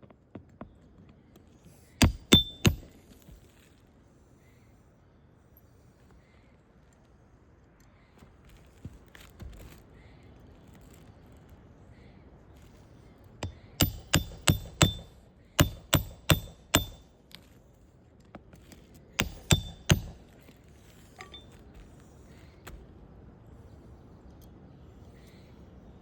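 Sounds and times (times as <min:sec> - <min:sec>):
hammer striking nails: 0:02.0 - 0:03.0, 0:13.4 - 0:17.1, 0:19.2 - 0:20.3.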